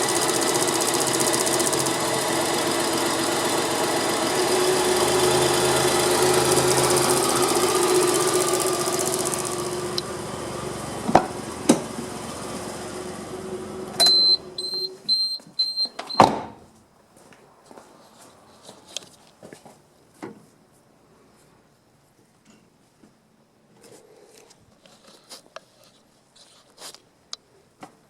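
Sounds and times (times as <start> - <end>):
small car engine idling: 0.0 - 14.8
short high-pitched beeps: 14.0 - 16.2.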